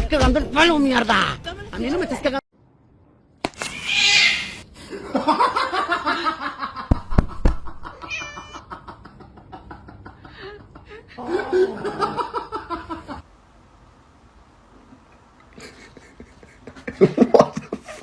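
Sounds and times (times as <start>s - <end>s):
cat yowling: 8.0s - 8.6s.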